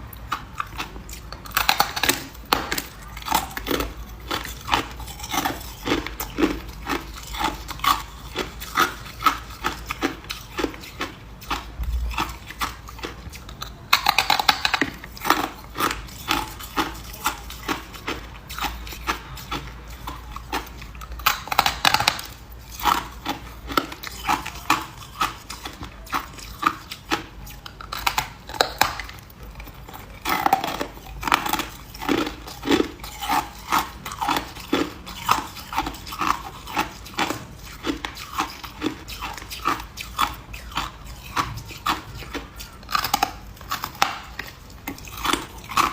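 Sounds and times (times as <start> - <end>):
person crunching ice: 0.5 - 29.1, 30.2 - 45.9.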